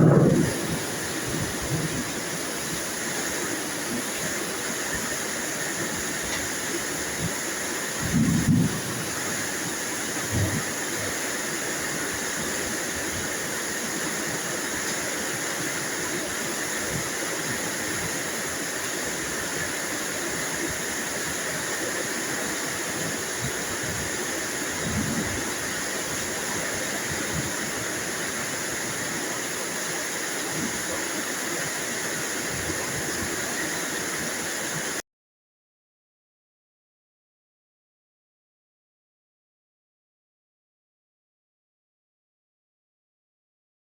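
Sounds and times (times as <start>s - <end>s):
steady rain hiss: 0.0s - 35.0s.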